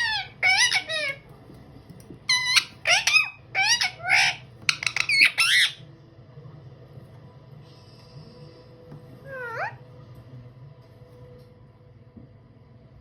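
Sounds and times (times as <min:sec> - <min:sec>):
parrot squawking loudly: 0:00.0 - 0:01.2, 0:02.3 - 0:05.8, 0:09.2 - 0:09.8.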